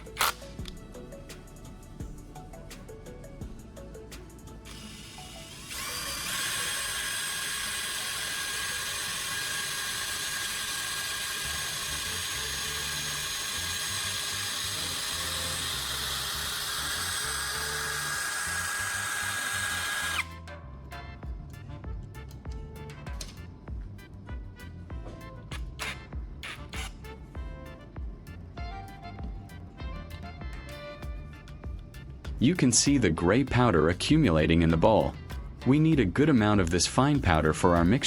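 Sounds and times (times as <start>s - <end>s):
electric drill whining: 0.0s - 20.5s, 25.8s - 27.1s.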